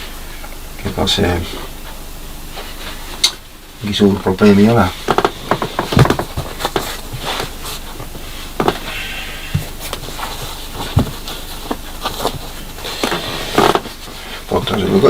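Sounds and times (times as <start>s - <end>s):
objects knocking and clicking: 5.1s - 6.9s.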